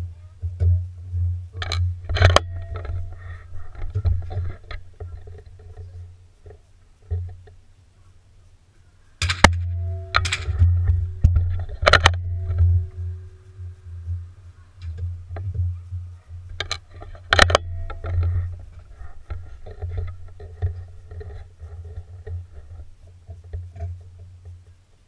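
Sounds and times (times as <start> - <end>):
steady low hum: 0.0 - 25.0
rifle shot crack: 9.2 - 10.8.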